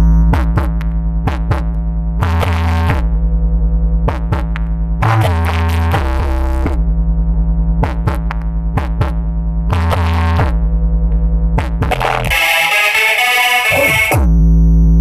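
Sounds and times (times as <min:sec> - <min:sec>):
loud electronic dance music: 0:04.0 - 0:06.8, 0:07.8 - 0:10.6, 0:11.6 - 0:14.3.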